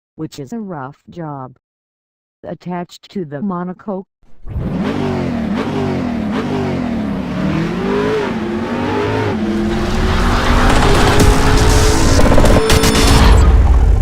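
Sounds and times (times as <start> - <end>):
car engine revving: 4.3 - 14.0.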